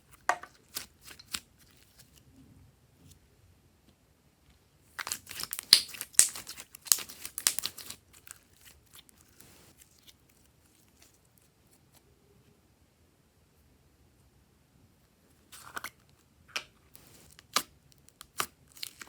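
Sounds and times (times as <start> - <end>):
slime crackling and popping: 4.9 - 11.1, 17.0 - 19.0.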